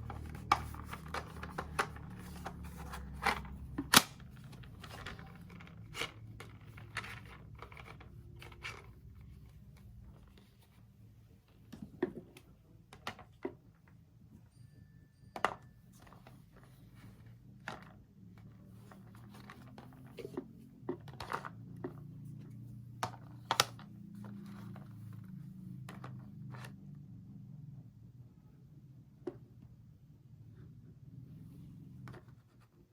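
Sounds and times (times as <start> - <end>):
light clicks and taps of items: 0.0 - 10.8
low steady hum: 0.0 - 32.9.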